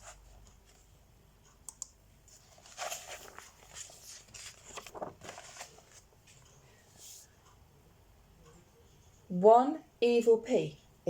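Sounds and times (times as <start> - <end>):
paper rustling: 2.3 - 7.3.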